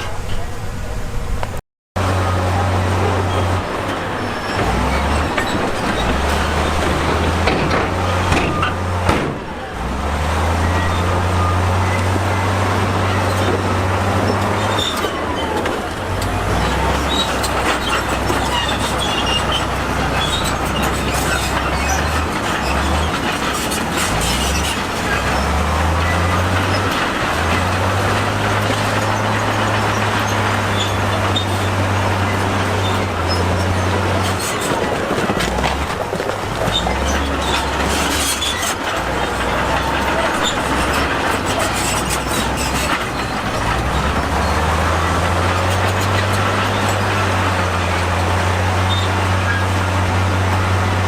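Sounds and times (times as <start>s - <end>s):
bulldozer diesel engine under load: 0.0s - 51.0s
steel tracks clanking and rattling: 0.0s - 51.0s.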